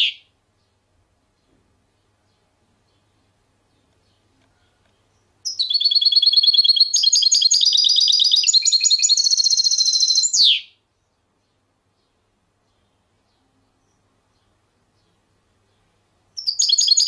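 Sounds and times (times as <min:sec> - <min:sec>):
songbird trilling: 0:05.4 - 0:10.8, 0:16.4 - 0:17.0.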